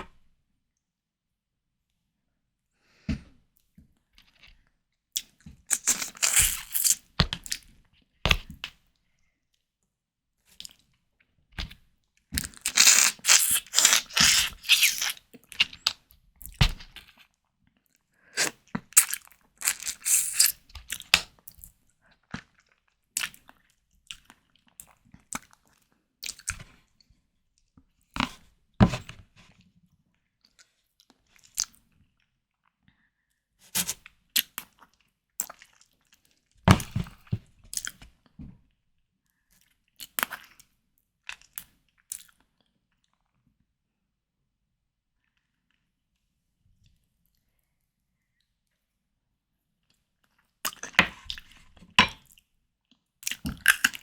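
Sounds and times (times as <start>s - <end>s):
crunchy wet chewing: 5.2s - 7.6s, 12.4s - 16.0s, 18.4s - 21.2s.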